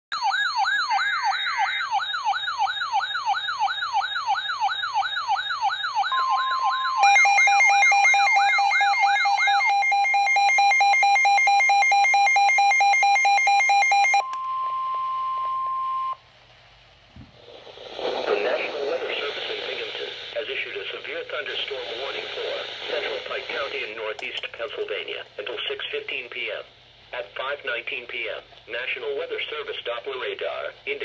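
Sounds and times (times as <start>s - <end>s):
pulsing electronic alarm: 0.1s - 16.2s
siren-like wailing alarm: 0.1s - 16.2s
steady warning tone: 5.8s - 16.2s.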